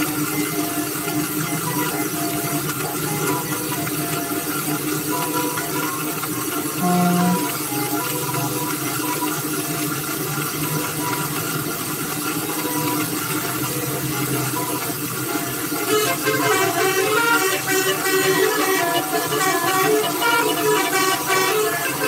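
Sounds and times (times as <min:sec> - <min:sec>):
noisy background: 0:00.0 - 0:22.0
musical bus horn tune: 0:00.4 - 0:08.6, 0:14.1 - 0:22.0
bus horns: 0:06.8 - 0:08.0, 0:15.3 - 0:22.0.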